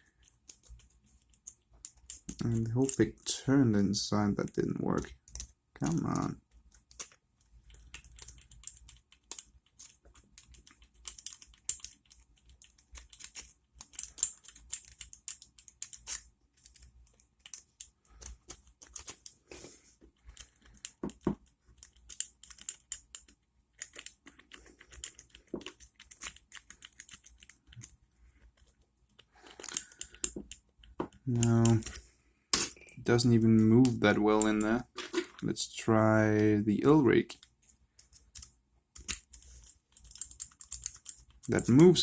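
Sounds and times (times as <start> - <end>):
lock pick clicking and scraping: 0.0 - 3.0, 5.0 - 19.4, 20.2 - 32.0, 38.0 - 41.8.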